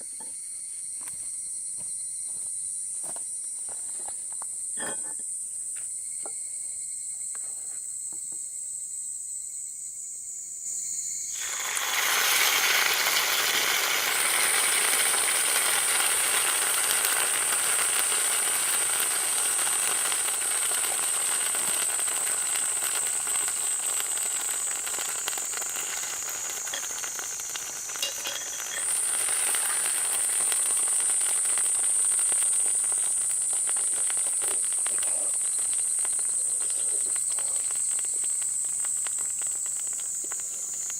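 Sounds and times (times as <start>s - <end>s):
crickets chirping: 0.0s - 40.9s
food sizzling in a skillet: 10.8s - 40.9s.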